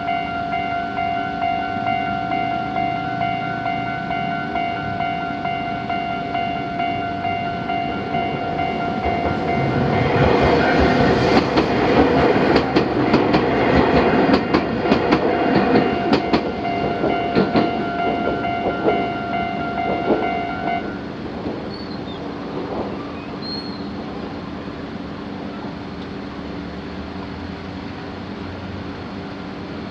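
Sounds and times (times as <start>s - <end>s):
crossing electronic warning alarm: 0.0s - 11.6s, 14.3s - 21.1s
train wheels clacking: 1.8s - 24.0s.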